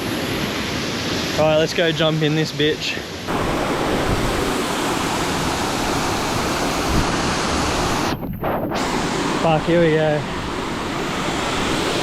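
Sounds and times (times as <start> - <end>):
waterfall rushing water: 0.3 - 8.2.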